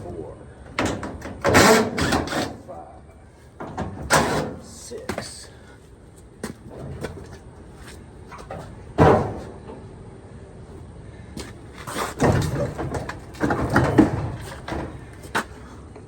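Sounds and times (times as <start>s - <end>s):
sheet metal clanking and scraping: 0.7s - 2.6s, 3.6s - 4.7s, 11.9s - 15.1s.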